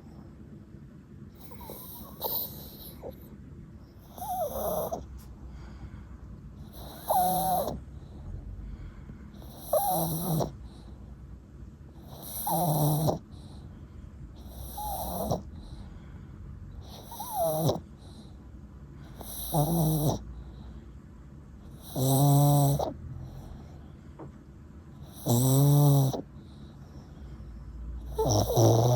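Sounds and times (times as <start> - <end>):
dog snoring with whistly tone: 1.4 - 3.2, 4.0 - 5.1, 6.6 - 7.8, 9.4 - 10.8, 12.0 - 13.5, 14.4 - 15.8, 16.8 - 18.3, 19.1 - 20.3, 21.7 - 23.6, 25.0 - 26.3, 28.0 - 28.9.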